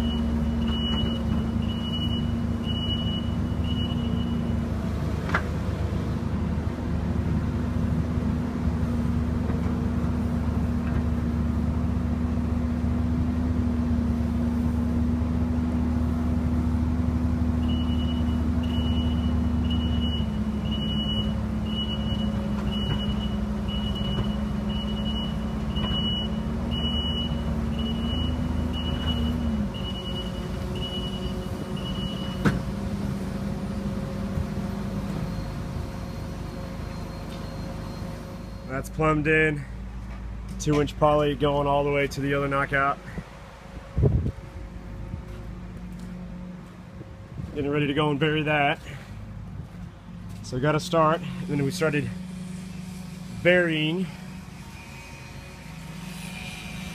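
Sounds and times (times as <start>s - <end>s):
backup alarm beeping: 0.0s - 4.6s, 17.6s - 32.5s
heavy vehicle engine running: 0.0s - 56.9s.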